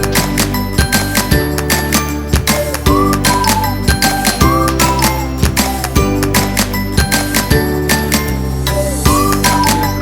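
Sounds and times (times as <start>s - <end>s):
background music with tinkling melody: 0.0s - 10.0s.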